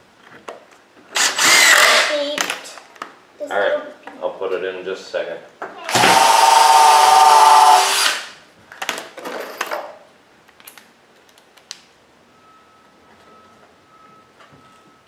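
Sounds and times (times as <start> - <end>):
power drill drilling into wood: 1.2 - 2.1, 5.9 - 8.4.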